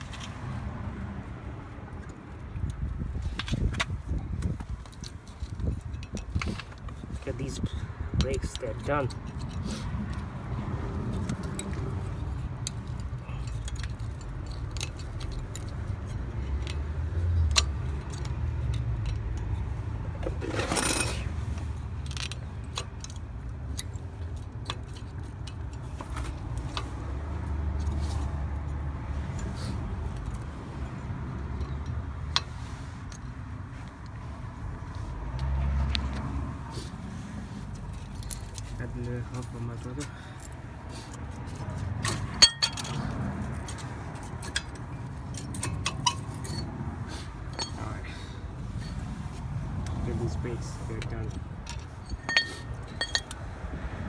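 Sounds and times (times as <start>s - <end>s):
metallic clicks of brake parts: 1.9s - 34.2s, 37.6s - 50.0s, 51.0s - 53.6s
metal scraping: 19.4s - 21.6s.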